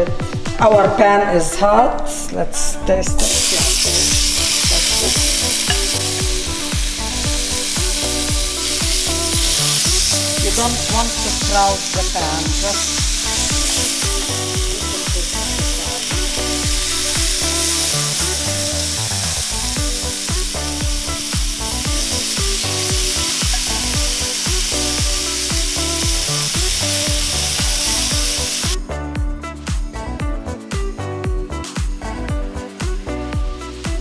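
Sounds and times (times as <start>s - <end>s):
background music: 0.0s - 34.0s
chicken sizzling in a pan: 3.2s - 28.8s.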